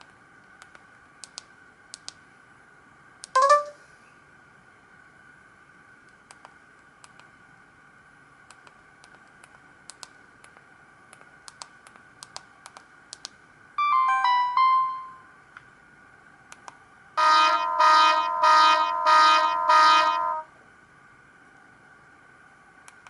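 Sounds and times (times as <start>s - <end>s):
phone ringtone melody: 3.4s - 3.8s, 13.8s - 15.3s, 17.2s - 20.4s.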